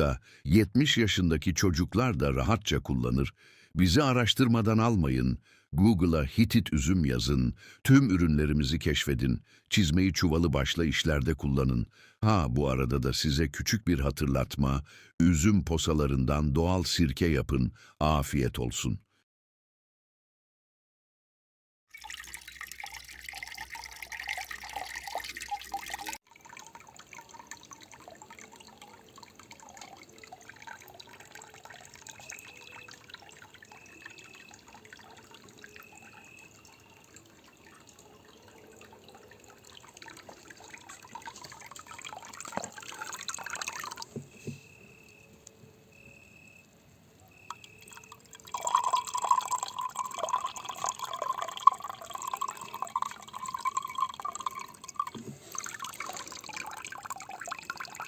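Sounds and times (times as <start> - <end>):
liquid dripping and trickling: 21.9 - 58.0.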